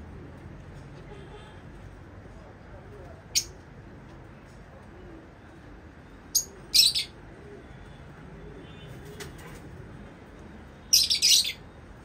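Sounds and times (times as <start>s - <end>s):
lovebirds chirping: 6.0s - 9.4s, 10.7s - 11.8s.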